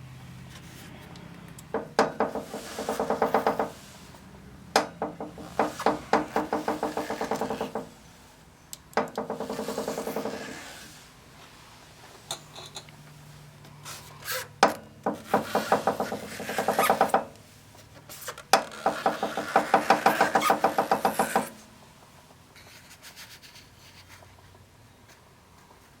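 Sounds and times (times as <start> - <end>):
pulley hub popping: 14.6 - 17.3, 18.2 - 21.5.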